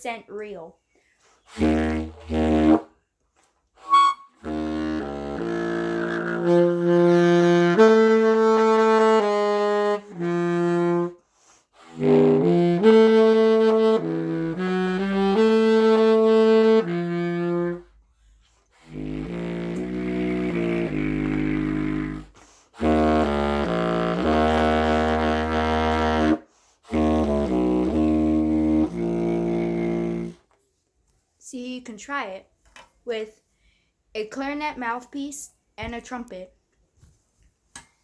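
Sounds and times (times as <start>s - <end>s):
reedy trumpet notes: 1.5s - 2.9s, 3.8s - 11.2s, 11.8s - 17.9s, 18.8s - 30.4s.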